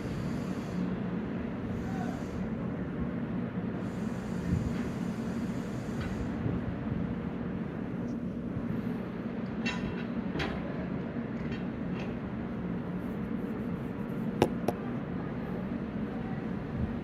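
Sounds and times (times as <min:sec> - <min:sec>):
brief knock: 0:14.4 - 0:14.8.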